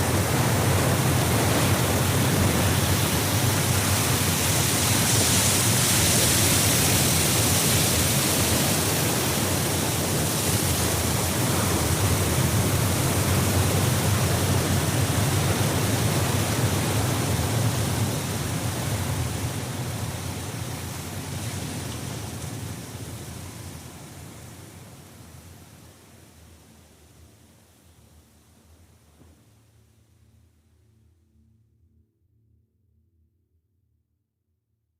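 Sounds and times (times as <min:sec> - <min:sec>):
steady rushing noise: 0:00.0 - 0:27.2.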